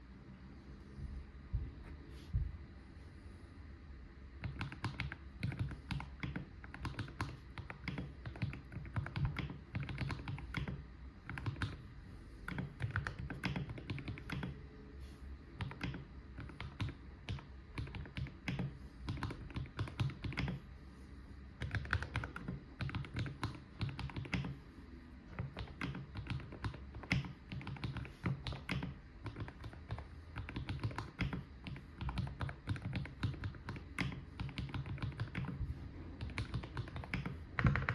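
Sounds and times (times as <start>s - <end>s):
mechanical keyboard typing: 4.4s - 11.8s, 12.4s - 14.6s, 15.6s - 20.6s, 21.6s - 24.6s, 25.3s - 35.6s, 36.2s - 37.9s.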